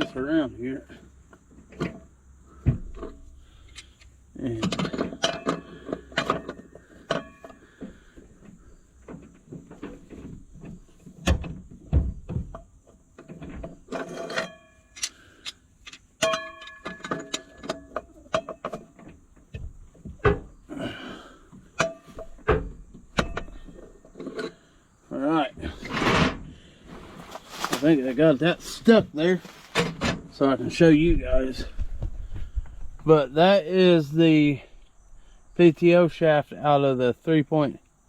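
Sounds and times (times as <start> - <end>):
metal knocks and clanks: 9.0 - 15.1, 21.7 - 24.5.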